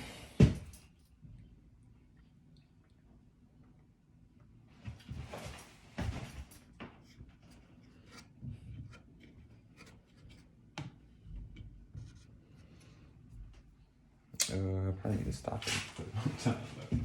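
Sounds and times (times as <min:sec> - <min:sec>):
rustling and scraping: 0:04.9 - 0:13.7, 0:15.2 - 0:17.0.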